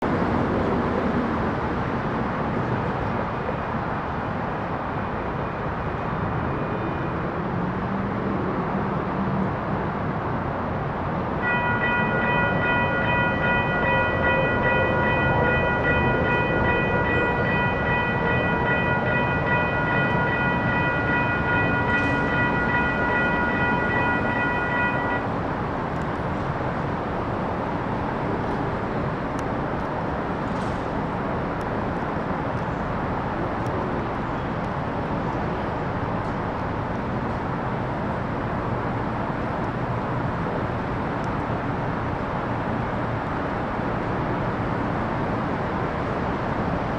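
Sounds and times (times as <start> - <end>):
train rumbling: 0.0 - 46.9
crossing warning bells ringing: 11.4 - 27.0.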